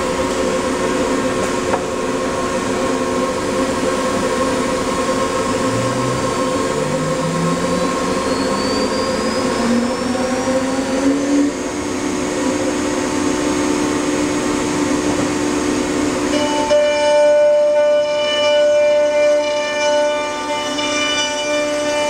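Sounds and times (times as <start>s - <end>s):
engraving machine whine: 4.1s - 12.1s.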